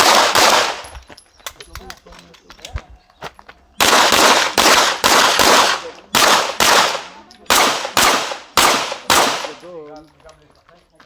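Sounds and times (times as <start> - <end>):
pistol shots echoing: 0.0 - 0.9, 3.8 - 9.8.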